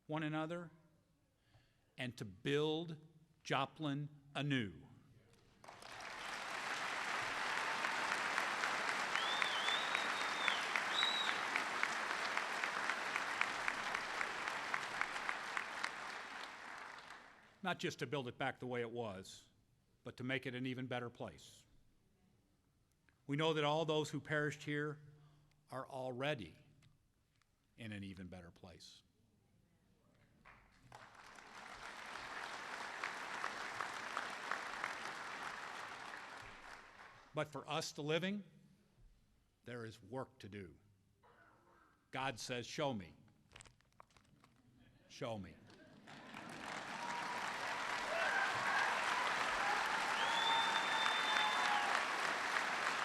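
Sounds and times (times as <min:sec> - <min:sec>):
audience applauding: 0:05.6 - 0:17.4, 0:30.8 - 0:37.2, 0:45.7 - 0:53.0
high whistle from crowd: 0:09.0 - 0:11.6, 0:48.1 - 0:52.1.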